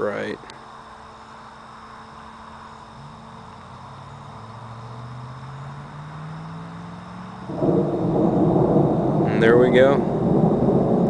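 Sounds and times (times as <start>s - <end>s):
low hum rising in pitch: 3.0s - 11.0s
loud thunderclap: 7.5s - 11.0s.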